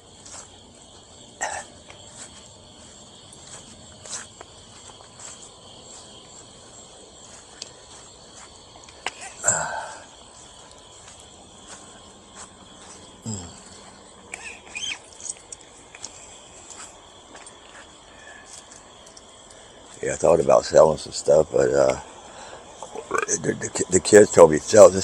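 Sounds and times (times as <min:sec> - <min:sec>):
crickets chirping: 0:00.0 - 0:25.0
light scuffs and clicks: 0:00.1 - 0:01.1, 0:01.7 - 0:09.4, 0:10.2 - 0:20.0.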